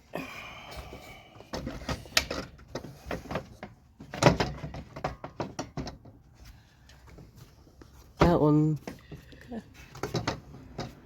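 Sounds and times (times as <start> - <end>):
metal parts knocking and clunking: 1.5 - 6.3, 9.9 - 11.0.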